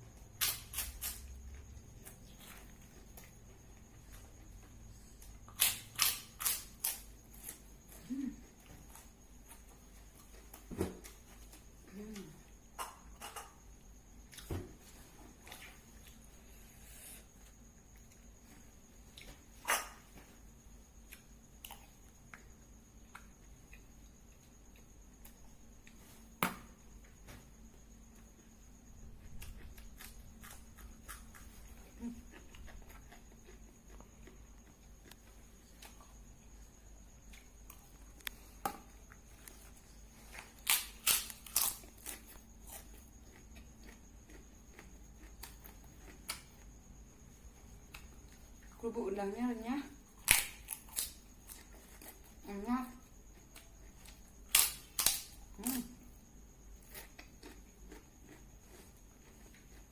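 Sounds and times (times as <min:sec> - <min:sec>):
crackers crunching: 0:05.5 - 0:07.6, 0:40.2 - 0:46.4, 0:50.2 - 0:52.2, 0:53.5 - 0:55.4, 0:56.8 - 0:59.9
chewing and food handling clicks: 0:32.3 - 0:36.0, 0:41.6 - 0:46.7, 0:56.8 - 0:59.9.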